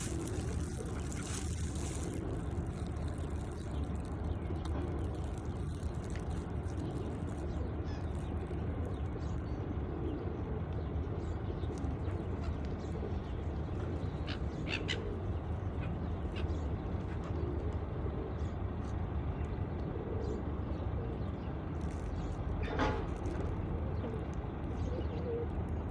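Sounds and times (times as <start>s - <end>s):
gulls calling: 0.0s - 10.4s, 11.0s - 18.7s
pigeons calling: 0.0s - 19.0s, 19.9s - 25.9s
steady low rumble: 0.0s - 25.9s.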